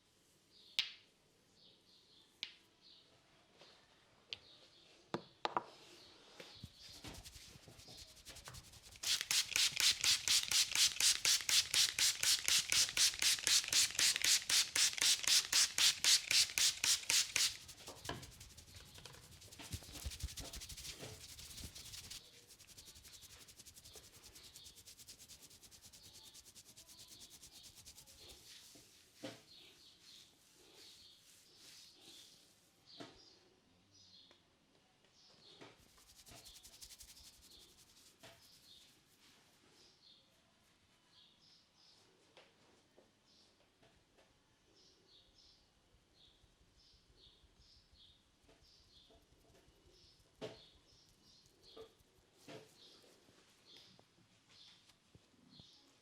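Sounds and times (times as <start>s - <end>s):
hands rubbing hair and scalp: 6.6s - 32.6s, 35.8s - 39.6s.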